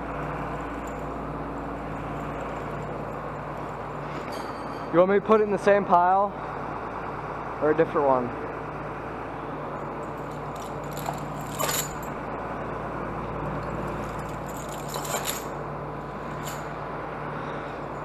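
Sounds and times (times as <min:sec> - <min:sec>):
diesel tractor engine idling: 0:00.0 - 0:14.9, 0:15.5 - 0:18.0
metallic clinks and rattles: 0:00.2 - 0:05.0, 0:09.8 - 0:12.4, 0:13.4 - 0:16.8.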